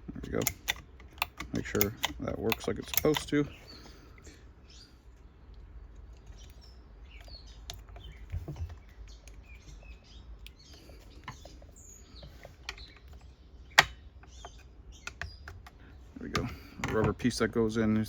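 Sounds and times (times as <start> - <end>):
clicks of parts being handled: 0.0 - 3.8
birds chirping: 0.0 - 18.0.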